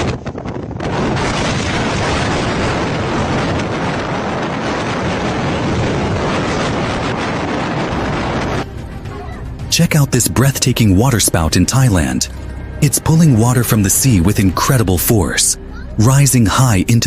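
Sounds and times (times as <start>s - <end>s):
wind rumble on microphone: 0.0s - 13.1s
strong storm wind rushing: 0.0s - 13.3s.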